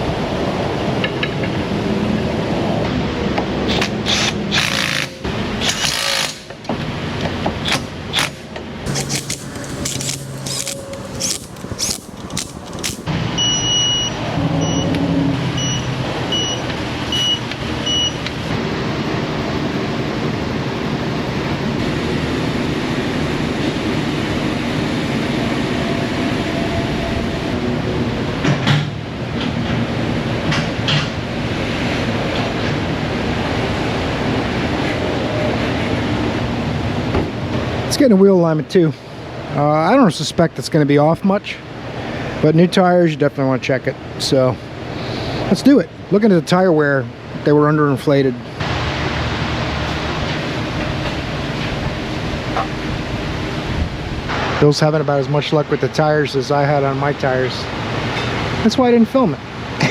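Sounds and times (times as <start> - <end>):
sharp clicks and knocks: 8.9 - 13.1.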